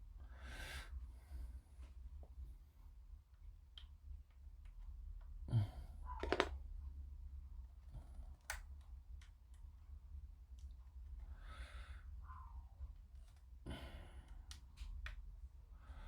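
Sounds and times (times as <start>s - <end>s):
low steady hum: 0.0s - 16.0s
light clicks and taps of plastic parts: 3.3s - 5.4s, 6.2s - 6.6s, 8.1s - 9.8s, 10.4s - 11.2s, 14.3s - 15.4s.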